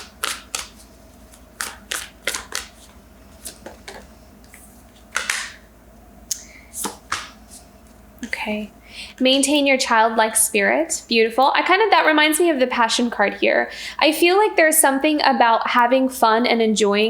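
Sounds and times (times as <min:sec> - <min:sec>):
cards snapping and clicking: 0:00.0 - 0:02.8, 0:05.1 - 0:05.6, 0:06.3 - 0:07.4
swish of sliding cards: 0:06.7 - 0:07.7.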